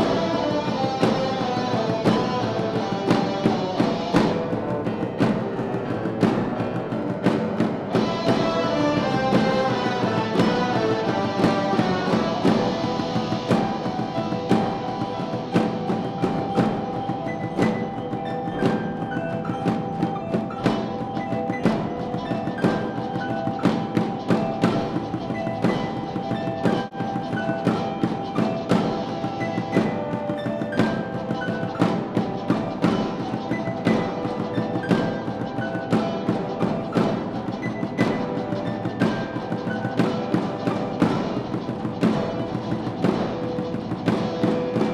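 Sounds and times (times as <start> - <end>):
wind ensemble playing chords: 0.0 - 25.0
percussion beat: 0.0 - 44.9
sharp percussion strike: 0.0 - 44.9.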